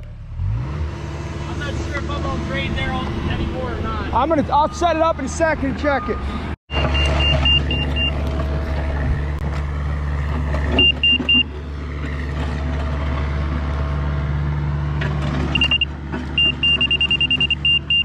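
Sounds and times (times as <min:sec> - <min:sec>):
diesel engine running: 0:00.0 - 0:18.0
short high beeps: 0:06.0 - 0:08.2, 0:15.6 - 0:18.0.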